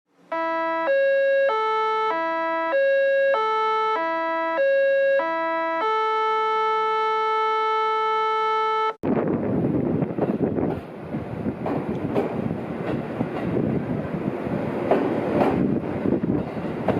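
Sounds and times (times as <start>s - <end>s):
electronic chime melody: 0.3s - 9.0s
passing train rumble: 9.0s - 16.9s.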